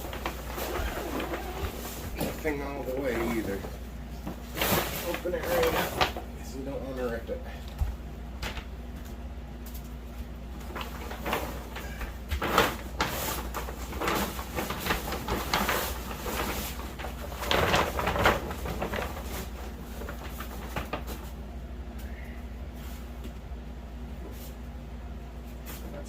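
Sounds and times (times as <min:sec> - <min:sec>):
fabric rustling and scraping: 0:00.0 - 0:06.2, 0:10.6 - 0:21.4
zipper unzipping: 0:00.6 - 0:01.8.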